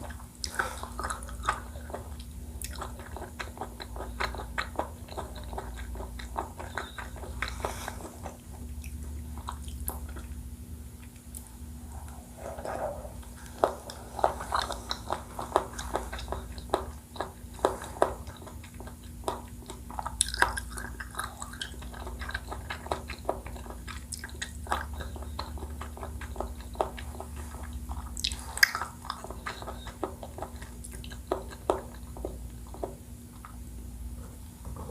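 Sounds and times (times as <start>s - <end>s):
wet mouth chewing clicks: 0.0s - 33.7s
steady low hum: 0.0s - 34.9s.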